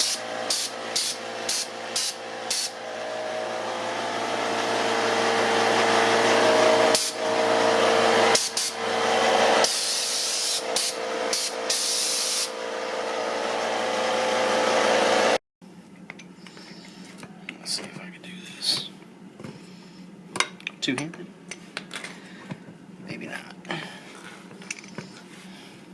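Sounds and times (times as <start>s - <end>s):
air hissing: 0.0s - 2.8s, 6.8s - 7.2s, 8.3s - 8.8s, 9.6s - 12.5s
air compressor running: 0.0s - 15.4s.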